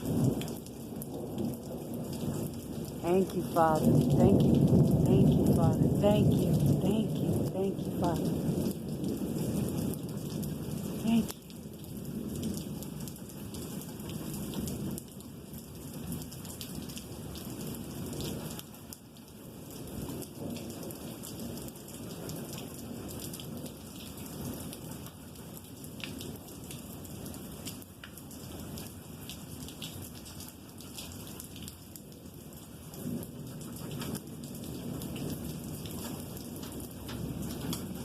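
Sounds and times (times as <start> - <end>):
rolling thunder: 0.0 - 3.0, 3.8 - 11.0
heavy rain falling: 0.0 - 38.0
raindrops ticking close by: 0.0 - 38.0.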